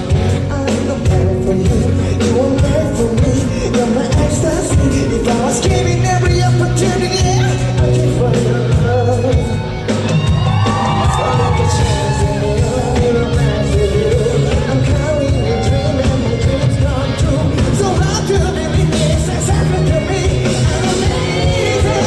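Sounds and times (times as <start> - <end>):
live pop-rock band music: 0.0 - 22.0
male vocalist singing: 0.0 - 22.0
crowd shouts: 9.9 - 12.8.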